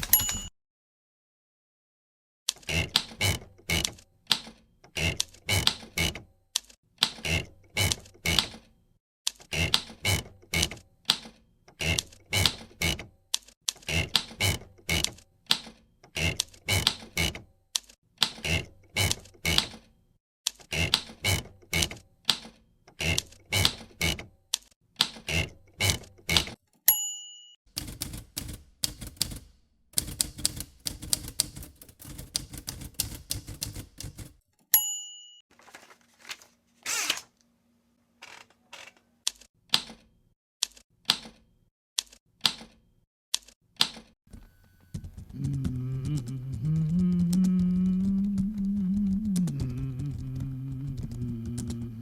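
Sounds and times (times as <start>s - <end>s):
typewriter keys striking: 0.0s - 0.5s, 27.7s - 34.4s.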